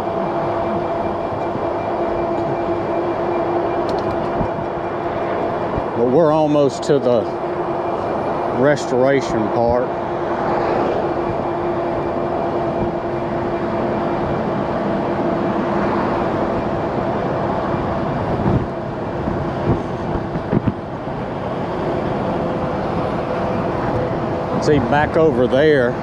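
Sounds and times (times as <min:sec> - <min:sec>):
electric bike motor hum: 0:00.0 - 0:26.0
wind and road noise: 0:00.0 - 0:26.0.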